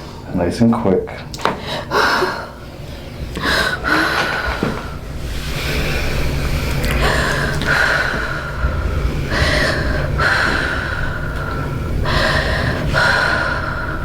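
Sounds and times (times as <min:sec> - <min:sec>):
woman gasping breaths: 0:01.5 - 0:14.0.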